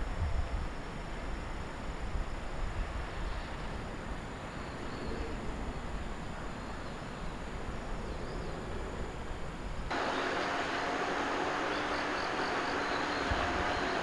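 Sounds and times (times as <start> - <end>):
outdoor background noise: 0.0 - 14.0
bird chirps: 11.5 - 14.0.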